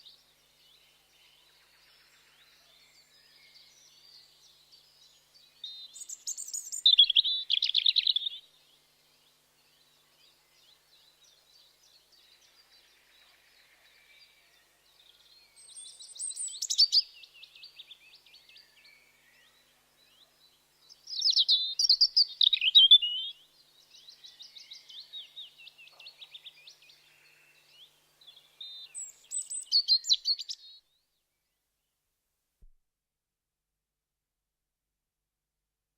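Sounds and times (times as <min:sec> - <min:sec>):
soft bird twittering: 0:15.0 - 0:30.8
robin warbling song: 0:21.0 - 0:23.4, 0:28.6 - 0:30.8.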